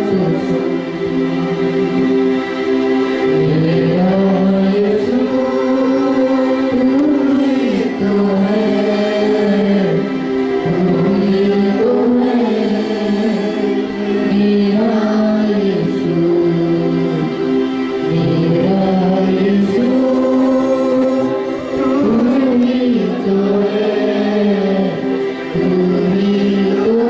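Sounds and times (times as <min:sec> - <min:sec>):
choir singing long held notes: 0:00.0 - 0:27.0.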